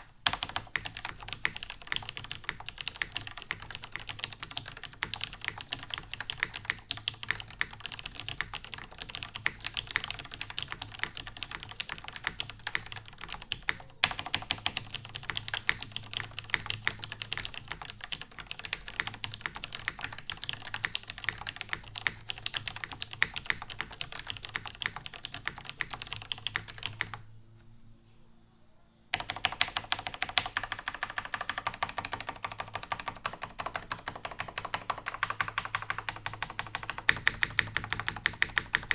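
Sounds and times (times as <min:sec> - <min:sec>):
fast mechanical keyboard typing: 0:00.0 - 0:27.2, 0:29.2 - 0:38.9.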